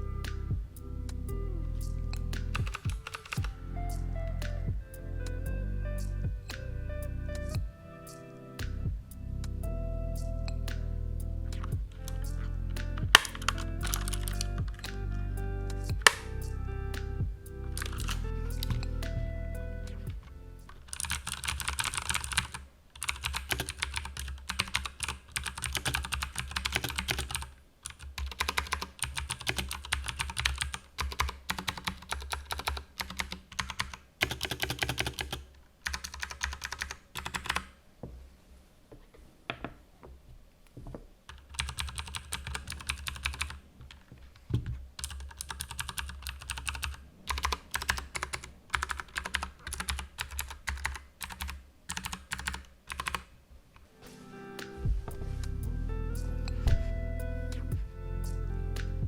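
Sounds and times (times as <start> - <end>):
typing on clicky mechanical keyboard: 2.5 - 3.4, 13.1 - 14.5, 20.8 - 37.7, 41.3 - 44.0, 45.0 - 53.3.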